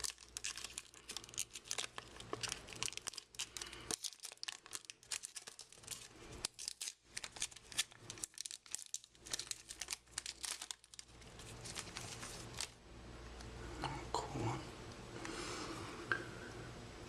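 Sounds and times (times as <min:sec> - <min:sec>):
plastic wrapper crinkling and tearing: 0:00.0 - 0:12.8.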